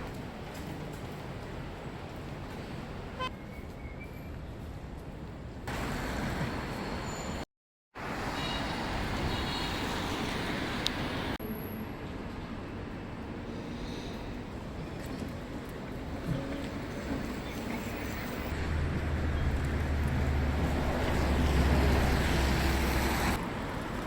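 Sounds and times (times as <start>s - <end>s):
traffic hum of passing vehicles: 8.0s - 24.0s.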